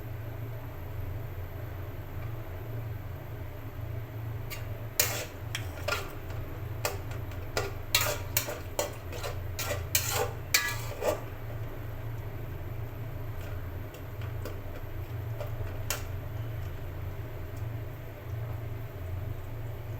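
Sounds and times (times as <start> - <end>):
steady low hum: 0.0 - 19.9
utensil scraping in a metal pot: 4.5 - 11.6.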